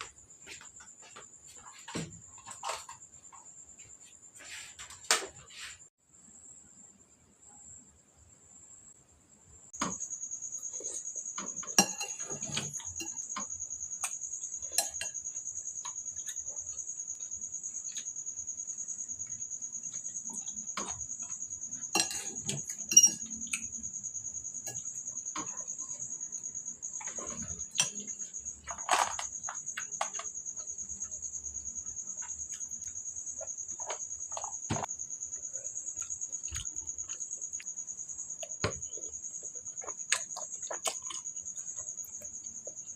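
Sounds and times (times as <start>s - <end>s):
cutlery clinking on dishes: 11.6s - 13.2s, 21.8s - 23.7s.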